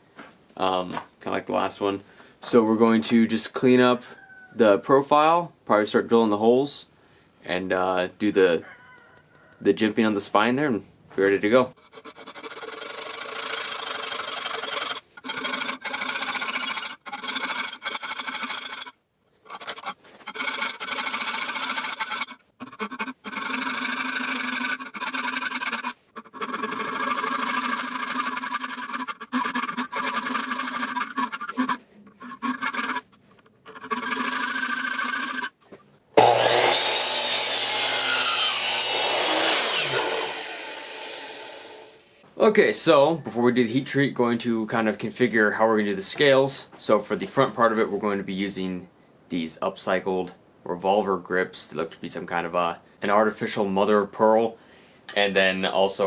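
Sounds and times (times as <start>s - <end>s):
metal grinding and filing: 11.8s - 35.6s, 36.4s - 41.8s.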